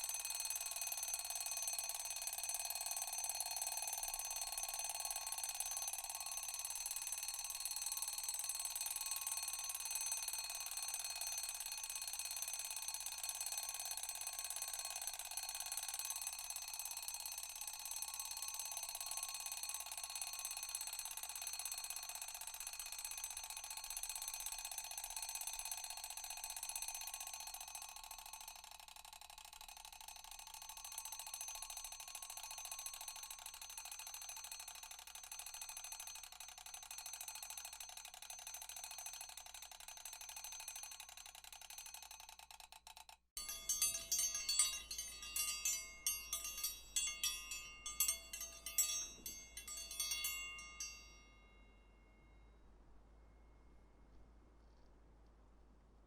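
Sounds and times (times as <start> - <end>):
alarm ringing: 43.4 - 51.3.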